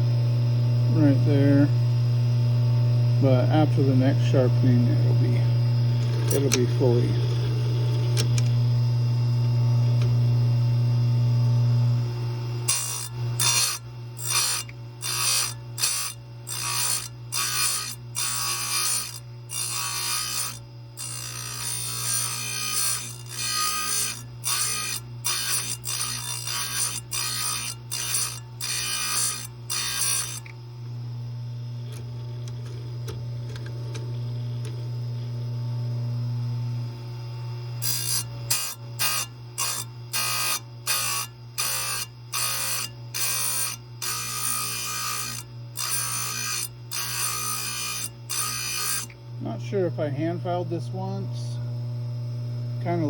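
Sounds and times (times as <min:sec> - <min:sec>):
grinder motor humming: 0:00.0 - 0:53.0
short grinding bursts: 0:03.4 - 0:08.5, 0:12.6 - 0:30.5, 0:37.8 - 0:49.2.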